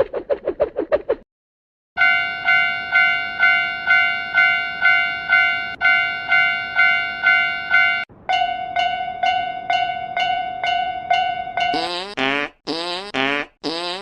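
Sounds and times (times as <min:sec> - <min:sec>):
railroad crossing bell ringing: 0:02.0 - 0:11.8.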